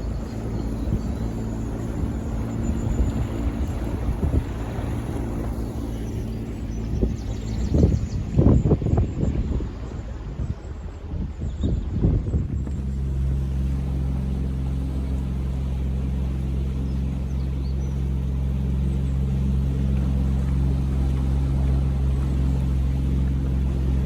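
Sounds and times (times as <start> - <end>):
wind buffeting microphone: 0.0 - 15.4
boat engine humming: 0.0 - 24.0.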